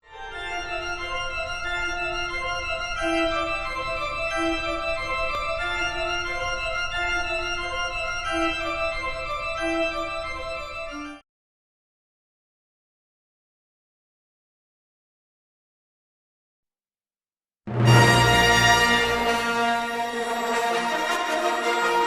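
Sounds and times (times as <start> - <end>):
organ music: 0.1 - 11.2, 17.7 - 22.0.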